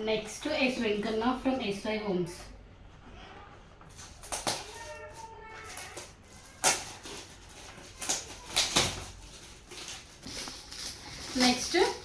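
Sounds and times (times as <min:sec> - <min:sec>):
gift wrapping rustling and tearing: 0:03.9 - 0:12.0.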